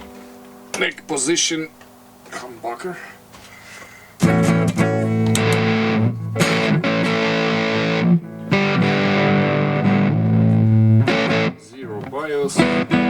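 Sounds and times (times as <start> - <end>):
fuzz electric guitar chords: 4.2 - 13.0.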